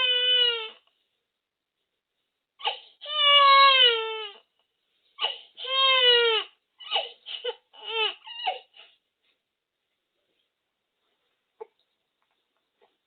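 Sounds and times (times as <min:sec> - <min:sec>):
baby crying: 0:00.0 - 0:00.8, 0:02.6 - 0:04.5, 0:05.2 - 0:09.0.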